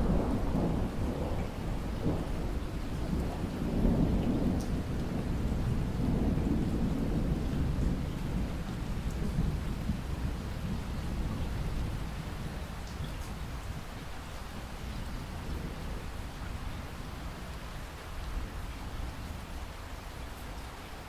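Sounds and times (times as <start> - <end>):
rolling thunder: 0.0 - 13.9
steady rain: 0.0 - 21.0.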